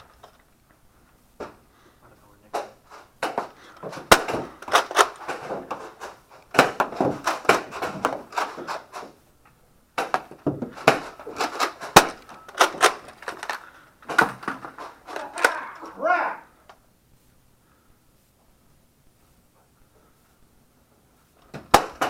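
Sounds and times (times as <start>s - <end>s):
foam balls striking walls: 2.5s - 9.2s, 9.9s - 16.1s, 21.4s - 22.0s.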